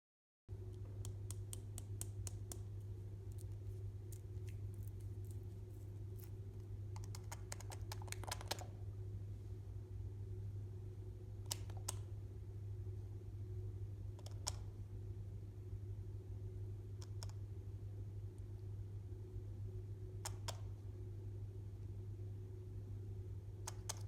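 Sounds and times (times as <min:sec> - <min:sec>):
steady low hum: 0:00.5 - 0:24.0.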